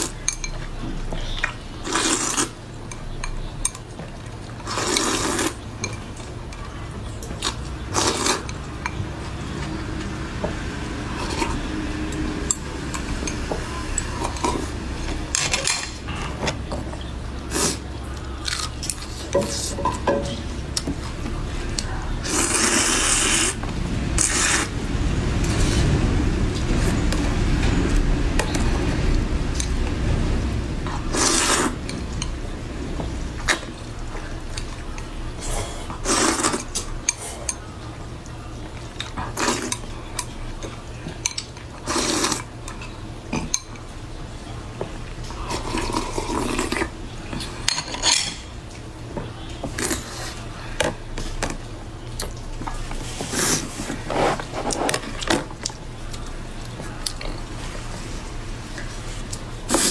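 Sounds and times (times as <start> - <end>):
wet chewing and slurping: 0.0 - 37.6, 45.2 - 47.7, 52.2 - 59.9
utensils knocking against dishes: 18.8 - 21.0.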